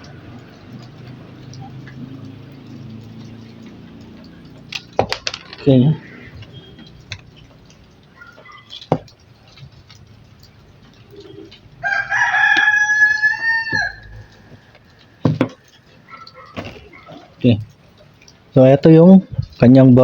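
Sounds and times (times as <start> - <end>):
rooster crowing: 11.2 - 15.1
sharp knocks: 13.7 - 15.6.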